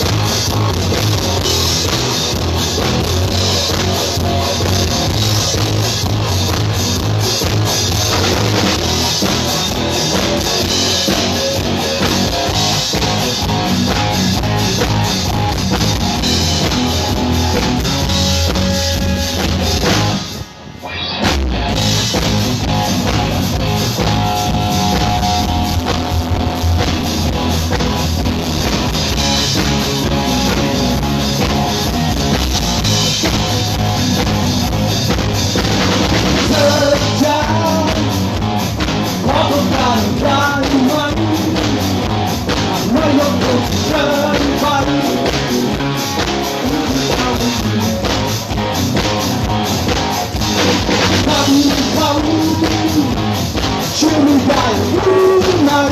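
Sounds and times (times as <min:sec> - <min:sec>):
rock music with drums and guitar: 0:00.0 - 0:55.9
person singing: 0:36.4 - 0:38.2, 0:39.2 - 0:41.9, 0:42.8 - 0:45.4, 0:51.2 - 0:53.2, 0:53.9 - 0:55.9.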